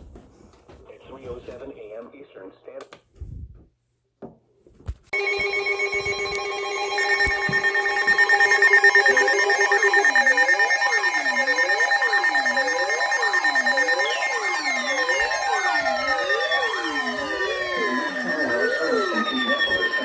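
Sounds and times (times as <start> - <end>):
fluttering tone chord: 5.2 - 20.0
high electronic tone: 5.2 - 20.0
sweeping siren-like tone: 5.2 - 20.0.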